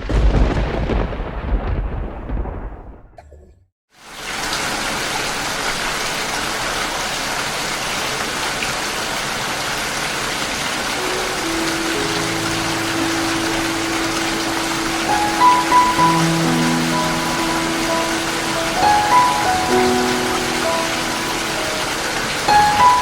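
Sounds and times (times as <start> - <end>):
heavy rain: 0.0 - 3.1, 4.0 - 23.0
thunderclap rumbling: 0.0 - 3.4, 11.3 - 23.0.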